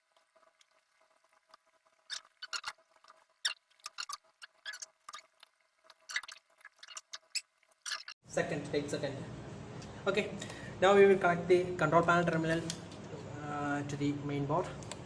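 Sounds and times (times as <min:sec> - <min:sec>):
screwdriver squeaks and clicks: 0:02.1 - 0:02.8, 0:03.4 - 0:05.3, 0:06.1 - 0:08.2.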